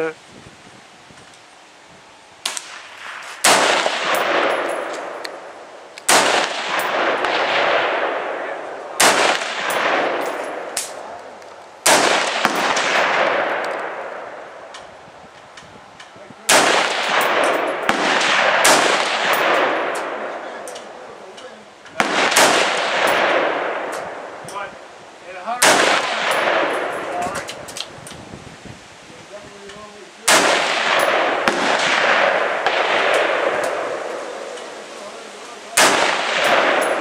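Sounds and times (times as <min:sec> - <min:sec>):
rifle shots echoing: 0:02.4 - 0:14.7, 0:16.4 - 0:21.1, 0:22.0 - 0:24.4, 0:25.5 - 0:27.7, 0:30.2 - 0:34.8, 0:35.7 - 0:37.0.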